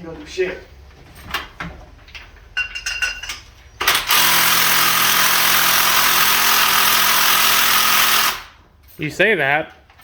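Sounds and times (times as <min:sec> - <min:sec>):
power tool hammering rattle: 0:03.8 - 0:08.6.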